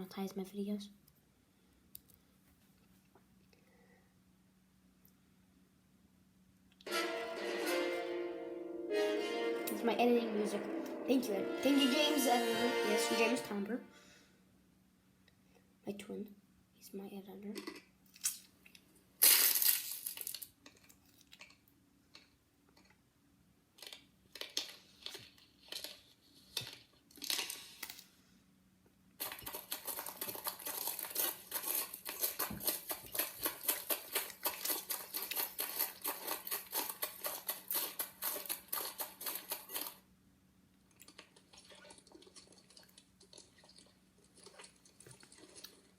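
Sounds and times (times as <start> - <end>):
crinkling crackling handling noise: 29.2 - 40.0.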